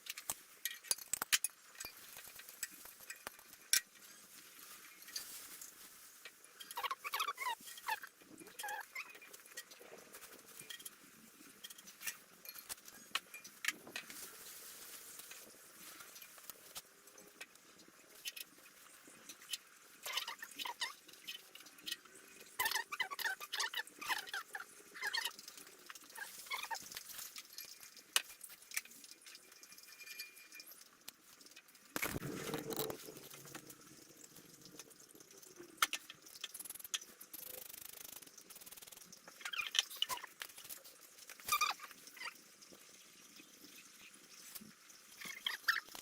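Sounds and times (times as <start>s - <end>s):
tools and metal parts clicking: 0.0s - 4.1s.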